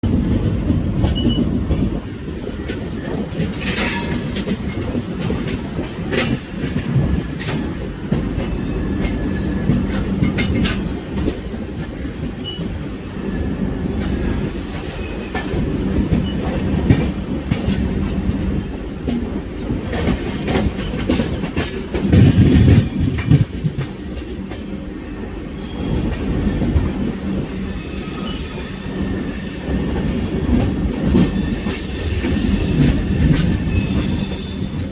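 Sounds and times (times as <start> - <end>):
train rumble: 0.0 - 34.9
wheels clattering over rail joints: 0.0 - 34.9
train wheel squeal: 1.0 - 1.6, 2.6 - 4.8, 7.4 - 10.9, 12.3 - 13.6, 14.6 - 17.1, 24.5 - 34.9.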